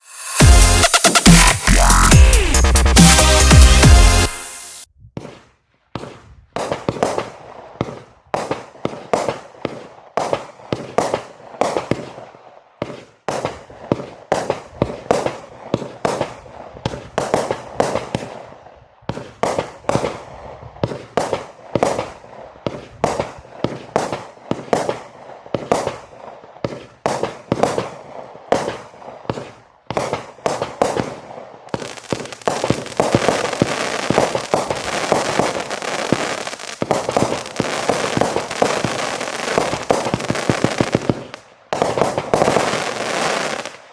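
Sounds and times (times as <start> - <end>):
firework crackling: 0.0 - 4.9, 28.6 - 43.9
firework shots and bursts: 0.0 - 43.9.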